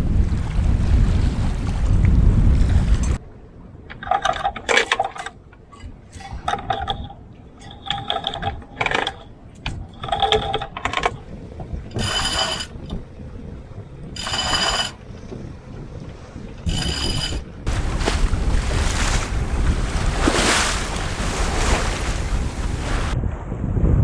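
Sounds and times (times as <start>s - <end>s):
wind noise on microphone: 0.0s - 3.2s, 5.8s - 24.0s.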